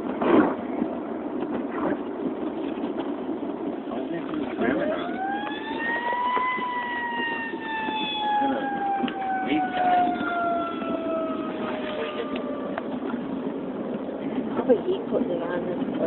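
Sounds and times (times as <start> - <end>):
low vehicle rumble: 0.0 - 16.0
siren winding up and down: 4.8 - 13.3.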